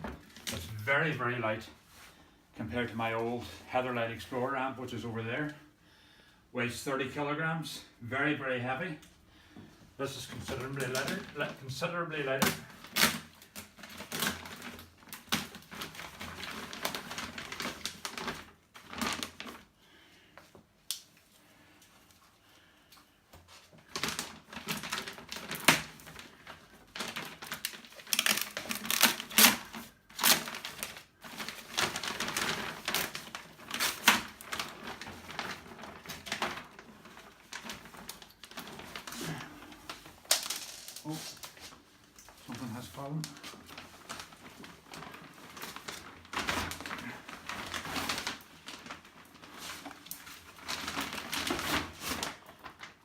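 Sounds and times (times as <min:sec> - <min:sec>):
packaging clicks and rustles: 0:12.3 - 0:19.7, 0:23.7 - 0:53.0.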